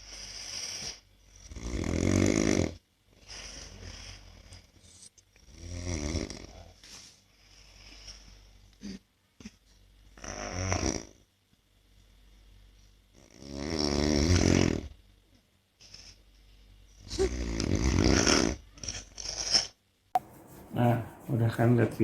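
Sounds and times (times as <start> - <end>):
quiet breaths: 0.0 - 1.8, 2.7 - 10.5, 20.2 - 22.0
man snoring: 1.5 - 2.8, 5.6 - 6.5, 13.4 - 14.9.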